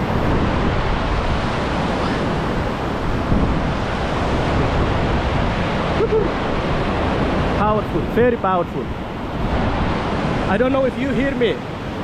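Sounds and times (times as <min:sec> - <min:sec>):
river current rushing: 0:00.0 - 0:12.0
wind buffeting microphone: 0:00.0 - 0:12.0.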